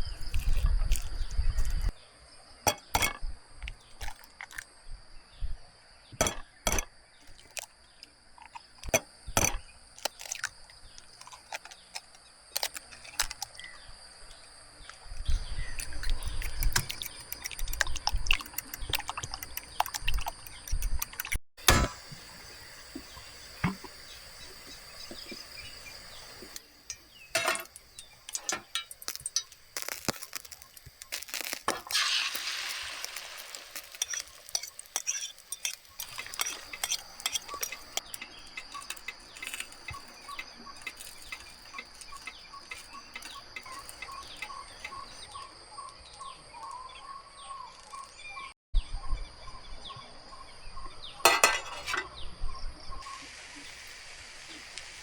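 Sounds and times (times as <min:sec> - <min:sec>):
clicks and taps: 0:16.2 - 0:21.8
high insect whine: 0:21.7 - 0:48.2.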